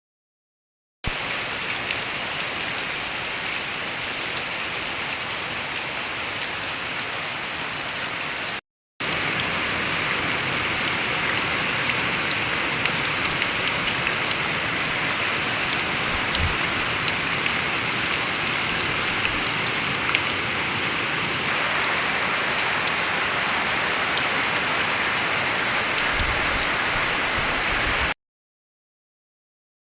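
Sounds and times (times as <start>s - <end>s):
steady rain hiss: 1.1s - 28.2s
rain drop ticks: 9.0s - 20.6s.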